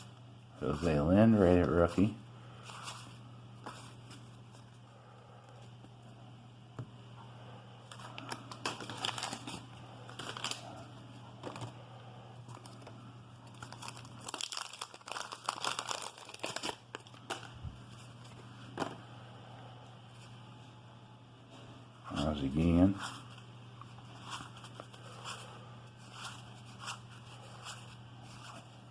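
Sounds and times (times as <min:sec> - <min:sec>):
wax paper wrappers crinkling: 0:07.9 - 0:11.8, 0:12.4 - 0:18.4
cards being handled: 0:13.6 - 0:19.0, 0:22.9 - 0:28.8.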